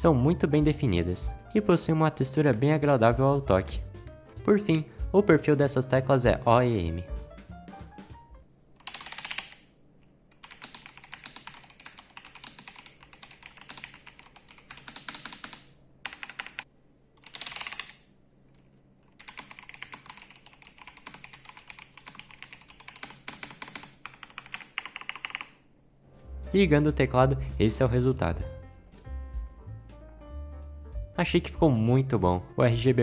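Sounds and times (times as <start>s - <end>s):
mechanical keyboard key clacks: 17.2s - 18.0s.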